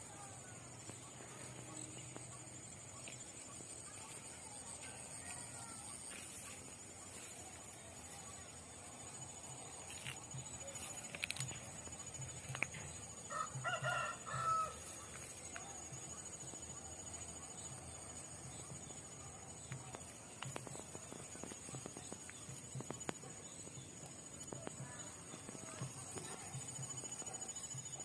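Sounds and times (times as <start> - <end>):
rooster crowing: 13.3 - 14.9.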